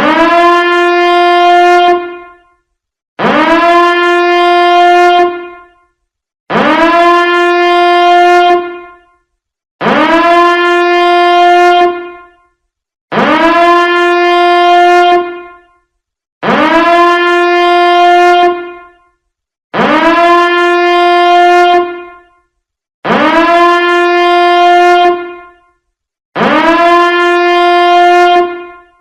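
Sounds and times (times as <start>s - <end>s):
alarm blasts: 0.0s - 19.2s, 19.8s - 25.8s, 26.4s - 29.0s.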